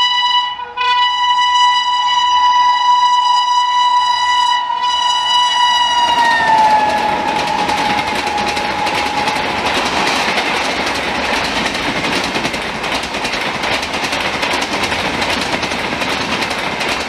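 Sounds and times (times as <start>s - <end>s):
twin-tone train horn: 0.0s - 10.6s
train coaches rushing clatter: 4.9s - 17.0s.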